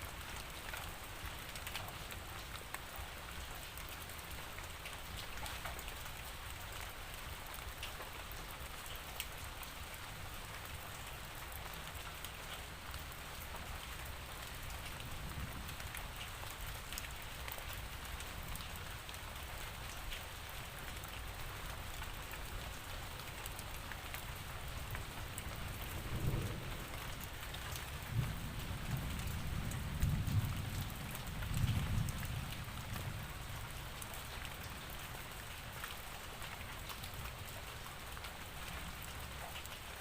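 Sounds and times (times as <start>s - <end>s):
steady rainfall: 0.0s - 40.0s
distant thunder rumbling: 25.7s - 27.1s.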